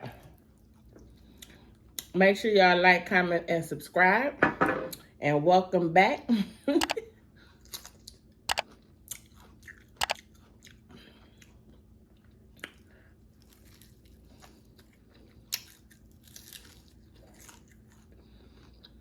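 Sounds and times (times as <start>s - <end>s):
person crunching fried chicken: 7.5s - 19.0s.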